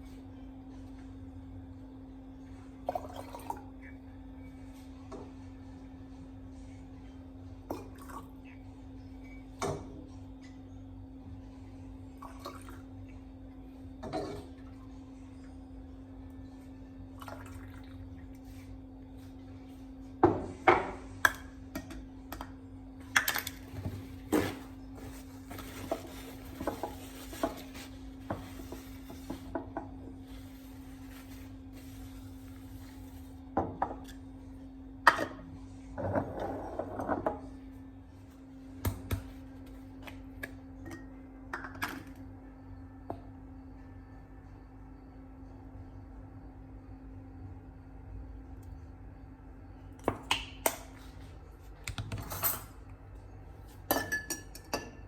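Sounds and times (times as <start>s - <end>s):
dishes and utensils clinking: 53.9s - 55.0s.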